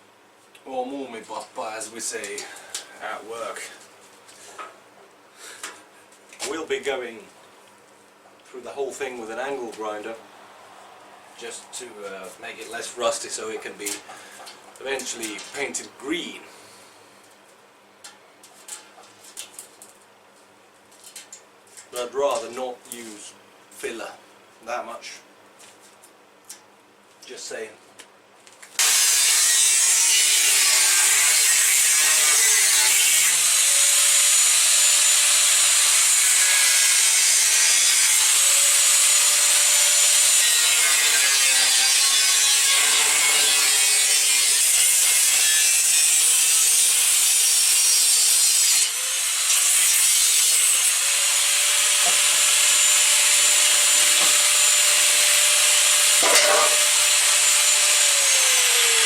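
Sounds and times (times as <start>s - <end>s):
angle grinder grinding metal: 28.8s - 59.0s.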